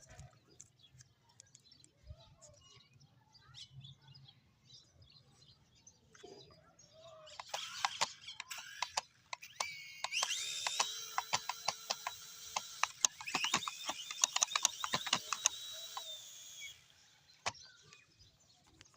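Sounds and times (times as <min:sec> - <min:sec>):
drone motors whining: 0:07.3 - 0:18.4
rapid clicking and rattling: 0:07.4 - 0:16.7.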